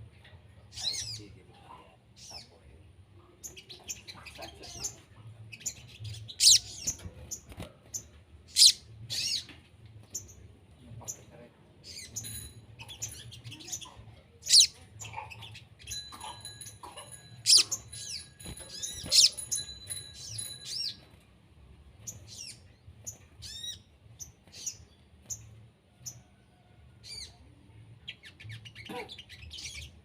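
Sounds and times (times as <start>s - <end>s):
birds chirping and calling: 0.2s - 21.2s, 21.9s - 26.4s, 27.0s - 30.0s.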